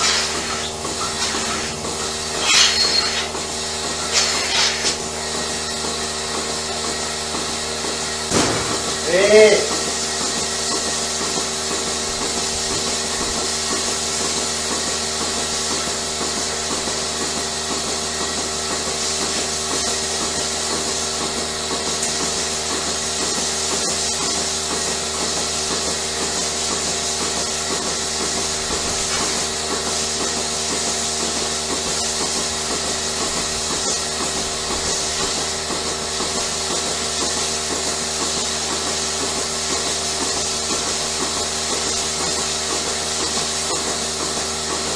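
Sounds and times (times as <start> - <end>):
machinery humming: 0.0 - 16.6.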